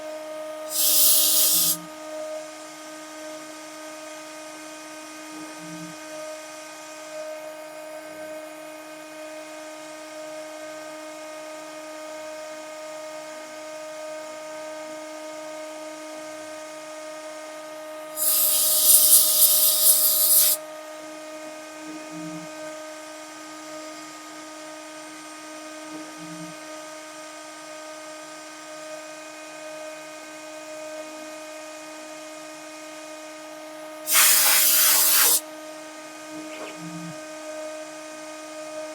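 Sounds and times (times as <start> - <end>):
loud hissing bursts: 0.7 - 1.8, 18.2 - 20.6, 34.1 - 35.4.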